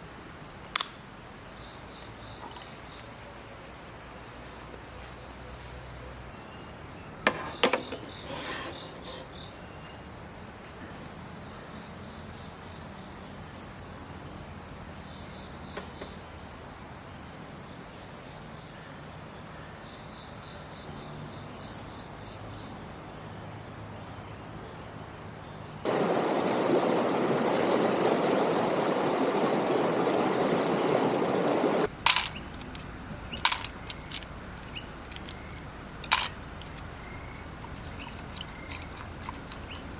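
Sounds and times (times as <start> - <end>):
high-pitched insect chorus: 0.0 - 26.0, 30.8 - 39.9
sharp clicks: 0.7 - 1.1, 31.9 - 39.9
even rushing noise: 25.9 - 33.4.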